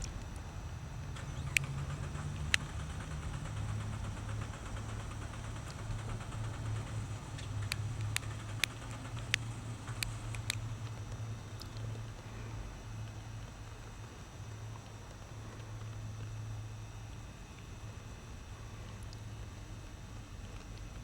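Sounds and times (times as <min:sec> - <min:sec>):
sharp clicks: 0:00.0 - 0:12.3
car engine idling: 0:00.0 - 0:16.3.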